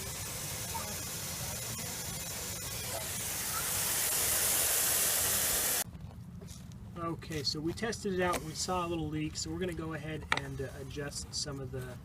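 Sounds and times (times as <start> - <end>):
water spraying from sprinkler: 0.0 - 5.8.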